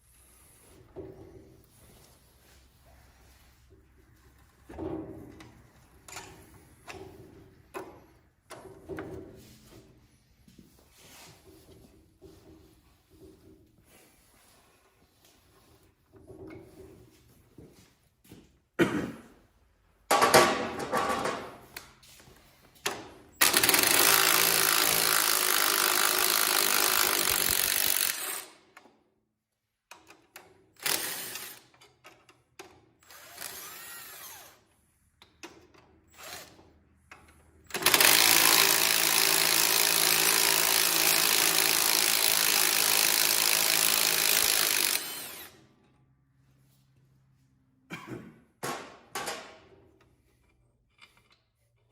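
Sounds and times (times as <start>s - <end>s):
tools and parts clanking: 20.0s - 21.8s, 48.6s - 51.9s
power drill running: 23.4s - 28.6s, 30.8s - 31.7s, 33.0s - 34.6s, 36.1s - 36.6s, 37.7s - 45.6s.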